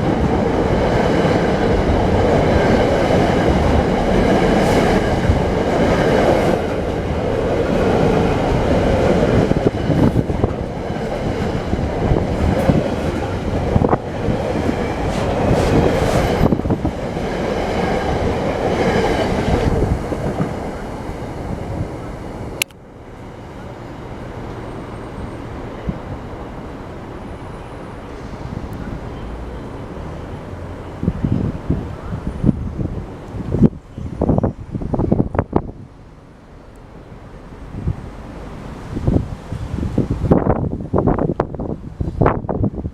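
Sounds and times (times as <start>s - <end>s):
train wheels rumbling on rails: 0.0s - 35.9s.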